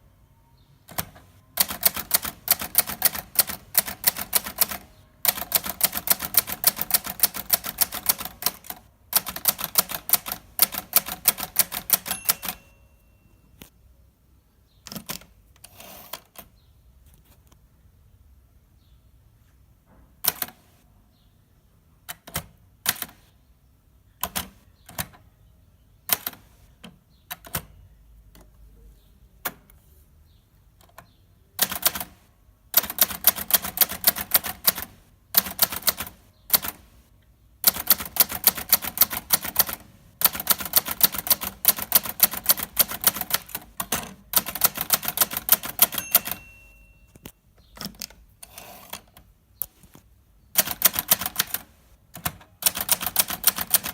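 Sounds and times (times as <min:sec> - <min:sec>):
typewriter keystrokes: 0:00.9 - 0:12.8, 0:20.2 - 0:20.6, 0:24.2 - 0:25.2, 0:26.1 - 0:27.7, 0:31.6 - 0:32.2, 0:32.8 - 0:37.0, 0:37.6 - 0:49.8, 0:50.6 - 0:53.9
typewriter margin bell ring: 0:11.6 - 0:13.5, 0:44.5 - 0:47.3.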